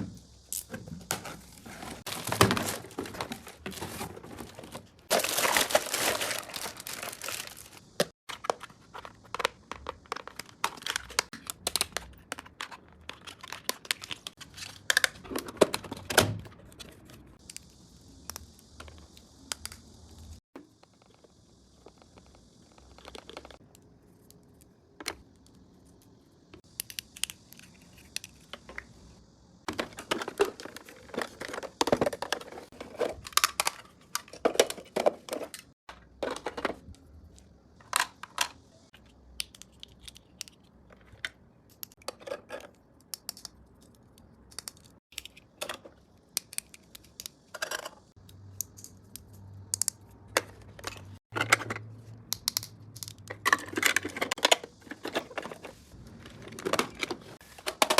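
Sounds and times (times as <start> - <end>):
packaging clicking and crinkling: 1.1 - 17.1
packaging tearing: 5.1 - 7.8.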